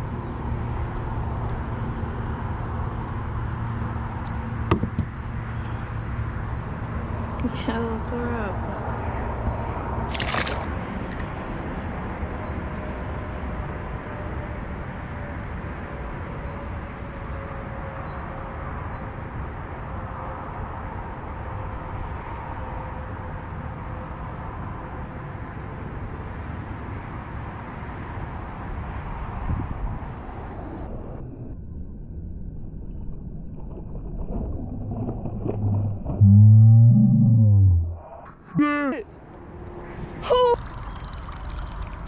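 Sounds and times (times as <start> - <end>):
moving water: 0.0 - 11.6, 32.8 - 38.2, 39.5 - 42.0
wind noise on microphone: 29.0 - 38.2.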